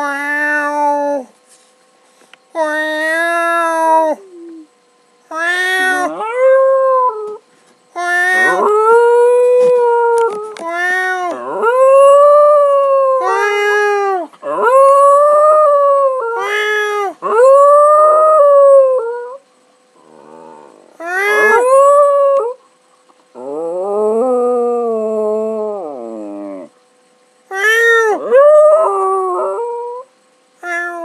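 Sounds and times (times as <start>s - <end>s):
dog howling: 5.4s - 7.4s, 8.1s - 19.4s, 20.0s - 22.6s, 23.4s - 26.7s, 27.6s - 31.0s.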